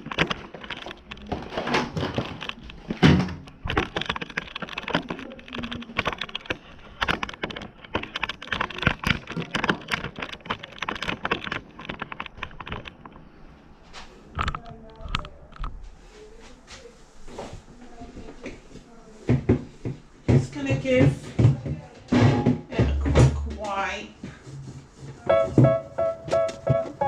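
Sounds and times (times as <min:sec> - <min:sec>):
hard plastic parts clattering: 0:00.0 - 0:13.2.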